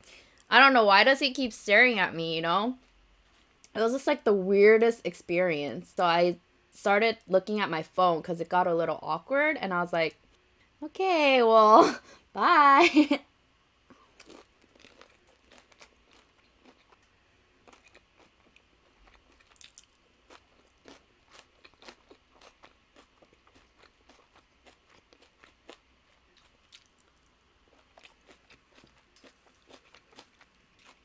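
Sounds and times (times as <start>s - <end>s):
crunching chips: 14.1s - 31.0s.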